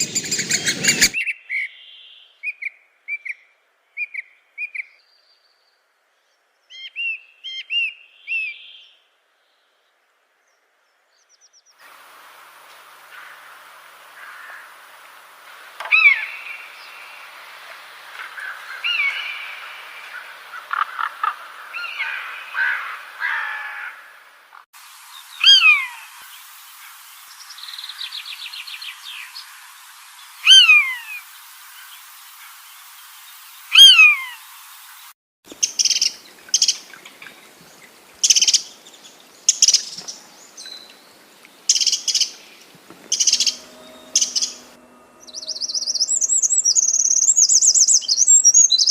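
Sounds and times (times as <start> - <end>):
rapid bird trill: 0.0 - 1.2, 30.4 - 31.3, 43.0 - 48.9
bird whistles and chirps: 0.0 - 1.7, 43.1 - 48.9
bird call sliding down in pitch: 30.4 - 31.2, 43.0 - 48.0.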